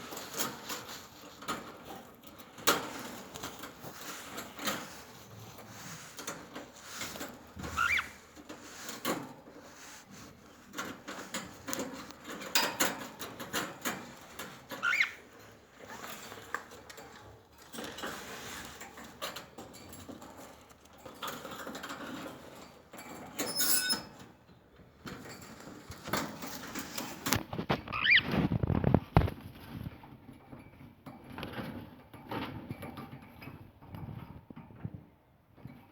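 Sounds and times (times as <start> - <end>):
light tapping and scratching: 0.0 - 35.9
cockatiels chirping: 7.0 - 8.2, 14.8 - 15.2, 27.9 - 28.3.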